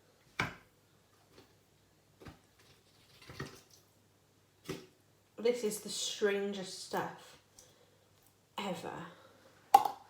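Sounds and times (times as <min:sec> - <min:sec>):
powder taps and crackles: 0:09.7 - 0:10.0.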